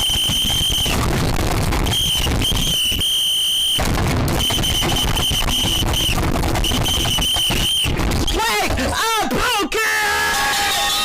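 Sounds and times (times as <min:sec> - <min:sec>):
harsh crackling noise: 0:00.0 - 0:09.0
shrill alarm tone: 0:10.2 - 0:11.0.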